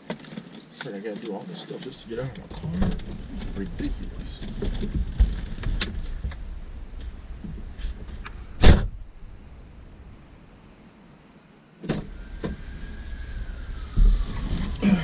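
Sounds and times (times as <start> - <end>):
small clicks and rustles: 0.0 - 6.4
car door shutting: 8.6 - 9.0, 11.8 - 12.8.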